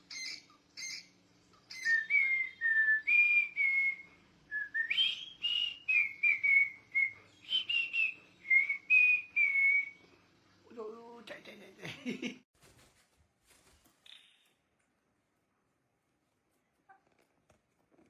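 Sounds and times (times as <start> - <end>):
parrot whistling: 1.7 - 10.0.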